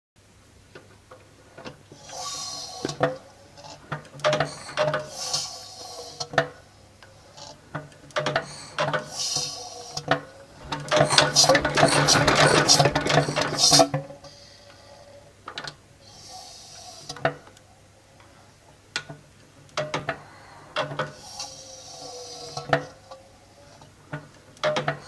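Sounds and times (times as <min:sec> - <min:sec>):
fast dense rattle: 0:10.5 - 0:14.1
clicks and knocks: 0:10.6 - 0:14.0.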